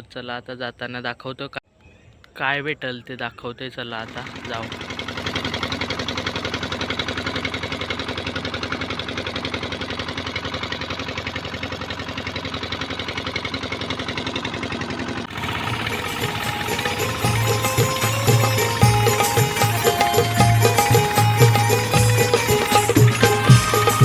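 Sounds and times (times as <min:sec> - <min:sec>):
boat engine running: 0:03.9 - 0:24.0
background music: 0:15.4 - 0:24.0.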